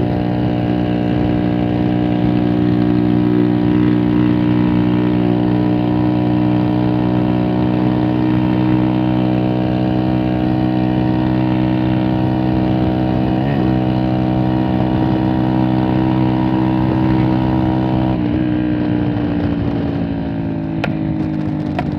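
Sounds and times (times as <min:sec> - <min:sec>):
vehicle engine idling: 0:18.5 - 0:21.9.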